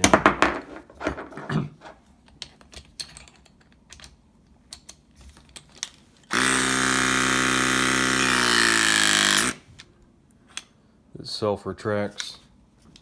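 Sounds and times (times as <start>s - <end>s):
hydraulic crimper motor and pump: 6.3s - 9.6s.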